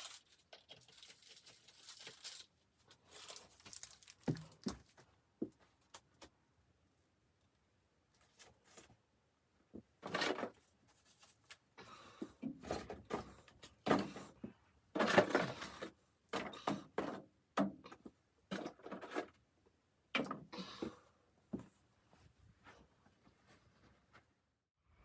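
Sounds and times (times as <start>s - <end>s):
rustling and scraping: 0.0s - 6.0s, 10.0s - 11.7s, 18.5s - 19.4s.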